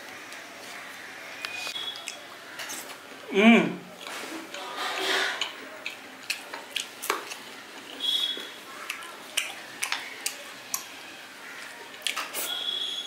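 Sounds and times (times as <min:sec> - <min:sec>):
person chewing with mouth clicks: 0:05.4 - 0:11.0, 0:11.6 - 0:12.6.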